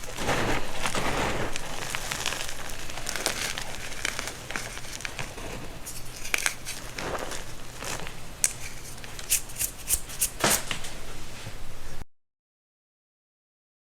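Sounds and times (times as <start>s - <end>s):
baking soda crackling and crunching: 0.0s - 10.9s.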